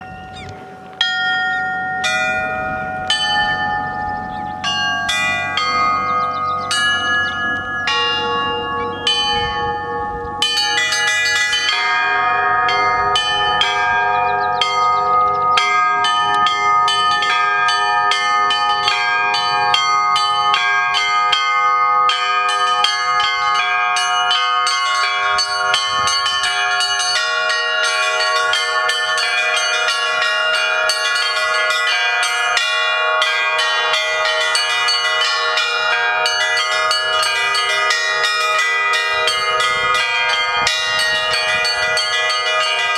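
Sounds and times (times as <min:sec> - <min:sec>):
lower bells ringing: 0:00.0 - 0:42.9
small high bells striking: 0:00.0 - 0:42.9.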